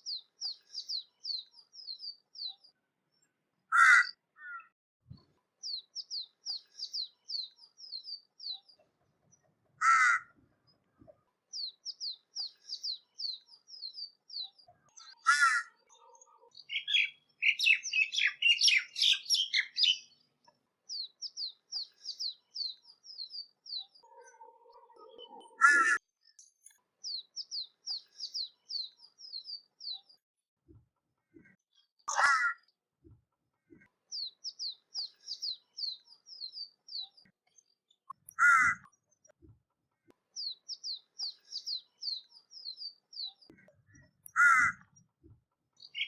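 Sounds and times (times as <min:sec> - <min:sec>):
small bird chirping: 0:00.0 - 0:03.3, 0:04.5 - 0:09.6, 0:10.6 - 0:30.2, 0:33.8 - 0:39.5, 0:40.3 - 0:45.2, 0:45.8 - 0:46.0
crow cawing: 0:03.7 - 0:04.7, 0:09.8 - 0:10.4, 0:15.2 - 0:15.8, 0:25.4 - 0:26.0, 0:32.1 - 0:32.6, 0:38.4 - 0:38.8, 0:44.4 - 0:44.8.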